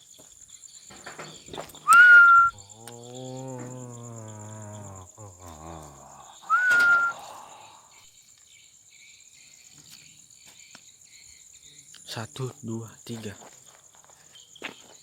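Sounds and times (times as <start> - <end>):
crickets chirping: 0.0 - 15.0
person whistling: 1.9 - 2.6, 6.5 - 7.2
low drawn-out voice: 2.7 - 6.5.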